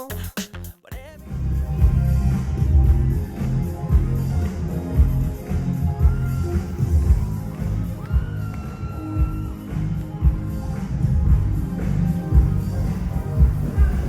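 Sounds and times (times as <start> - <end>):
person singing: 0.0 - 2.2
live pop music with bass beat: 0.0 - 14.0.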